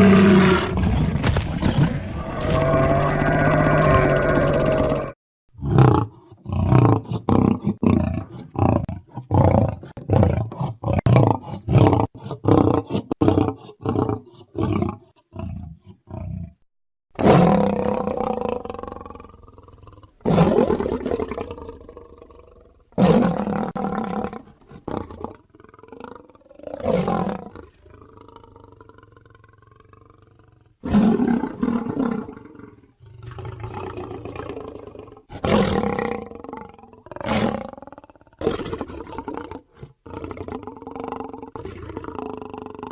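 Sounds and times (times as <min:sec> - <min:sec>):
long creature roars: 0:00.0 - 0:06.0
short growling calls: 0:01.8 - 0:05.2.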